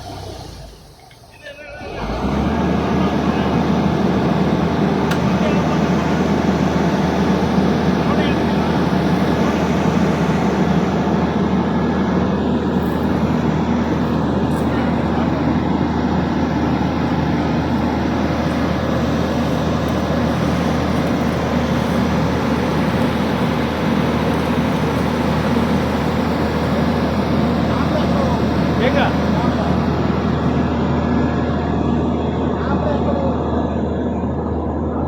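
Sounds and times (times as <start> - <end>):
excavator diesel engine running: 0.0 - 35.0.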